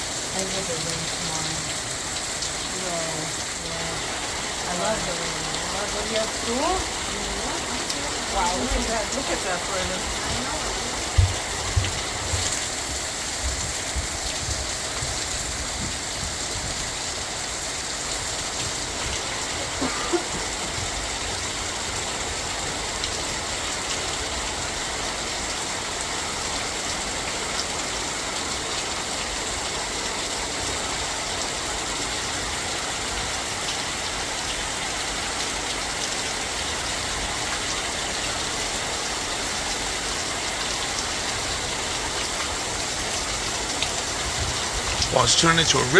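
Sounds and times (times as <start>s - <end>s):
heavy rain pouring: 0.0s - 45.9s.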